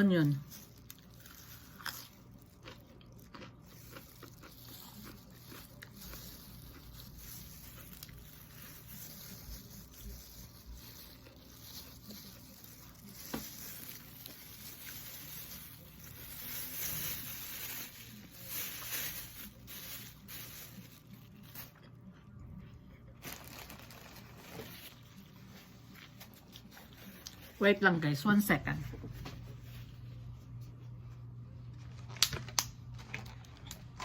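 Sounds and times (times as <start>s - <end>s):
crinkly rustling: 0.2s - 22.2s, 23.1s - 30.8s, 31.7s - 34.0s
chewing: 0.7s - 15.0s.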